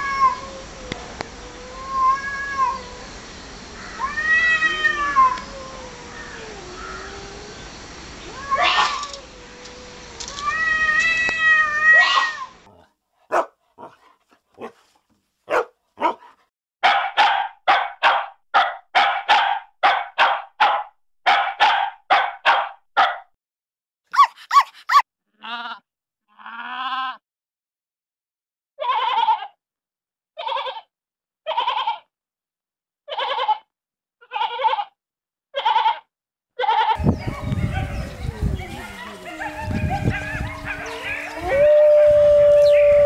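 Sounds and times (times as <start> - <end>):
animal calls: 36.6 - 41.7.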